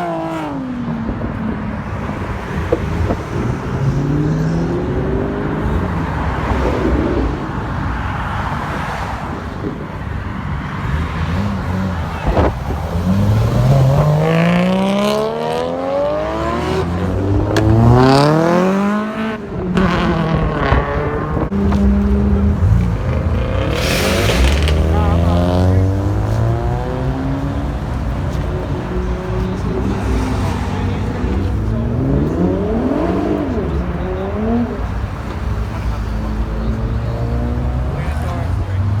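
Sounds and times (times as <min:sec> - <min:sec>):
car engine revving hard: 0:10.8 - 0:39.0
low rumble of other engines: 0:19.9 - 0:39.0
gear changes: 0:21.2 - 0:39.0.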